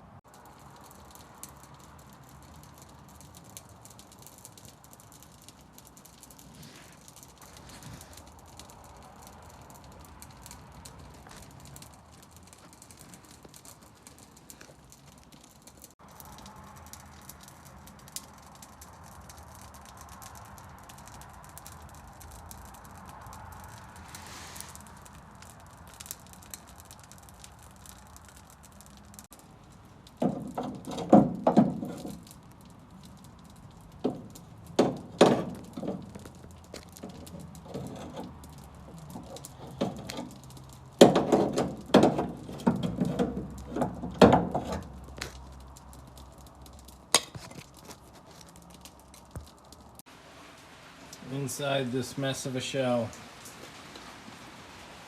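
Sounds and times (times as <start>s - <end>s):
tools and metal parts clunking: 41.0s - 44.9s.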